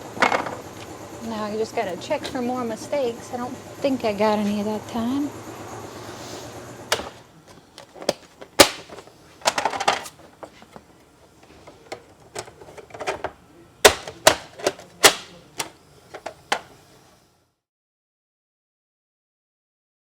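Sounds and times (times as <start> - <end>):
wooden frame parts knocking: 0.2 - 0.6.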